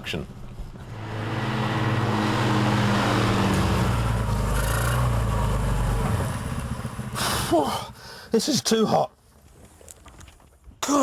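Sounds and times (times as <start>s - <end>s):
small petrol engine running: 0.8s - 8.0s.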